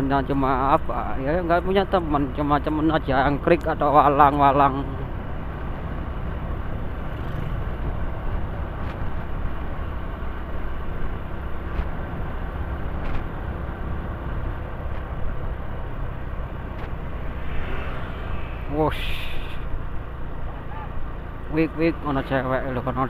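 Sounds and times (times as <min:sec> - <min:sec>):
motorcycle road noise: 0:00.0 - 0:23.0
wind rush: 0:16.5 - 0:20.1.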